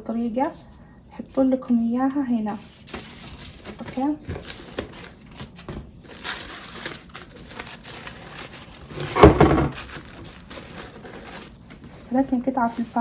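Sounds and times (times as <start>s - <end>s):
packaging paper rustling: 2.8s - 13.0s.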